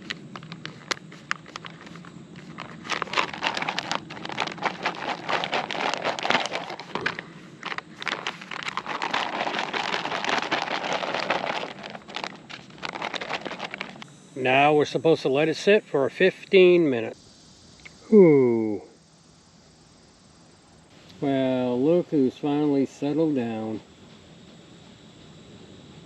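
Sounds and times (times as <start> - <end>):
foil pouch crinkling: 0.0 - 14.0.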